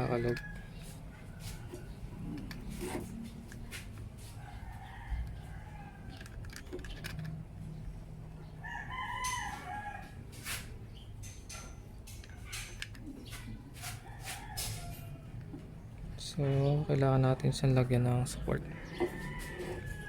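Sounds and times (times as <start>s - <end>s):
rooster crowing: 0.0s - 1.9s, 4.4s - 6.2s, 8.6s - 10.3s, 14.0s - 15.5s, 18.6s - 20.0s.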